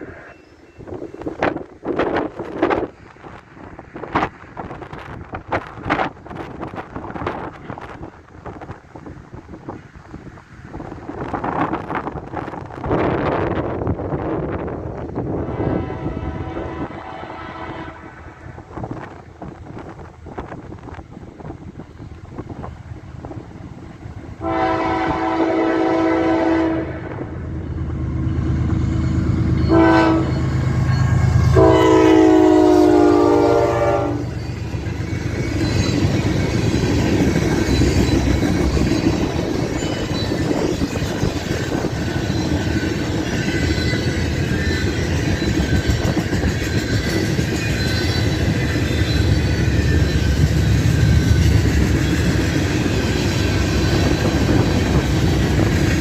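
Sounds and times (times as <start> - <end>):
locomotive air horn blasts: 15.4 - 18.2, 24.4 - 27.3, 29.6 - 30.4, 31.4 - 34.3
train wheels clattering over rail joints: 34.3 - 56.0.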